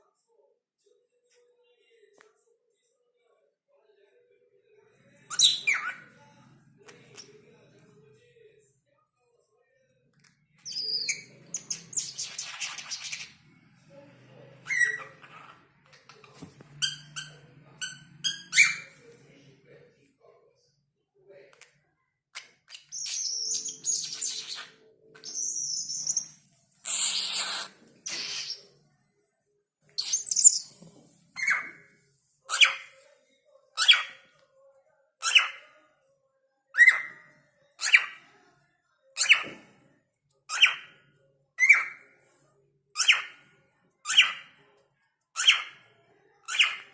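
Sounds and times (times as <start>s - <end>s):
cockatiel chirping: 14.6s - 15.5s, 16.8s - 19.0s, 22.7s - 28.6s, 30.0s - 30.7s, 44.1s - 44.5s, 45.4s - 45.8s.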